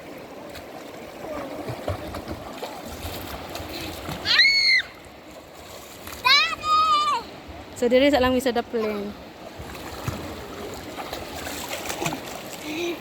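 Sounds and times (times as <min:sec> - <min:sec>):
river water rushing: 0:00.0 - 0:13.0
child shouting: 0:04.2 - 0:05.0, 0:06.2 - 0:07.3.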